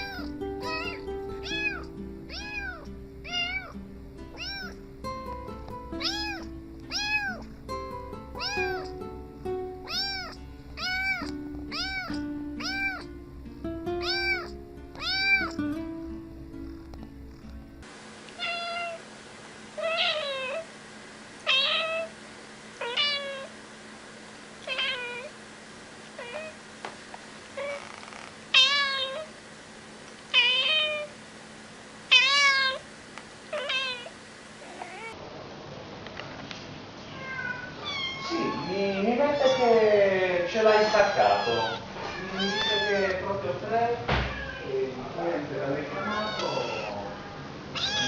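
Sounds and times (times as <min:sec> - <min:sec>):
cat meowing: 0:00.0 - 0:04.8, 0:06.0 - 0:07.5, 0:08.4 - 0:09.0, 0:09.8 - 0:13.2, 0:14.0 - 0:15.6, 0:18.4 - 0:19.0, 0:19.8 - 0:20.7, 0:21.4 - 0:22.1, 0:22.8 - 0:23.5, 0:24.6 - 0:25.3, 0:26.2 - 0:26.6, 0:27.6 - 0:29.3, 0:30.3 - 0:31.1, 0:32.1 - 0:32.8, 0:33.5 - 0:35.2, 0:37.0 - 0:39.8, 0:40.6 - 0:43.2, 0:44.2 - 0:44.8, 0:45.9 - 0:48.0
music with melody and beat: 0:00.2 - 0:03.2, 0:03.8 - 0:17.8.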